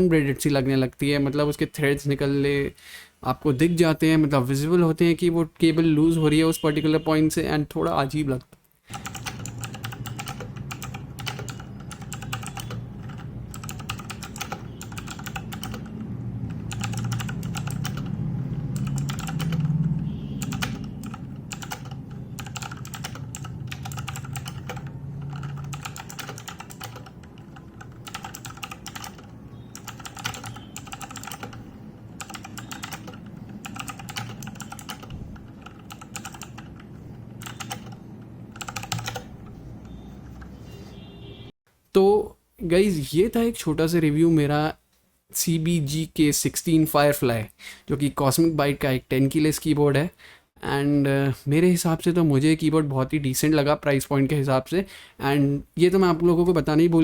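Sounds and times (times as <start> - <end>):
mechanical keyboard clicks: 8.9 - 19.8, 20.4 - 31.6, 32.2 - 40.0.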